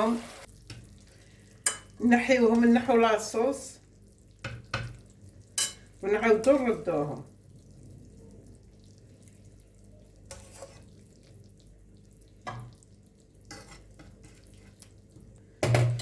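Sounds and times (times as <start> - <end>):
scrapes and sizzles in pan: 0.0 - 3.0, 3.8 - 6.9, 8.7 - 15.2
food simmering in a pan: 0.0 - 16.0.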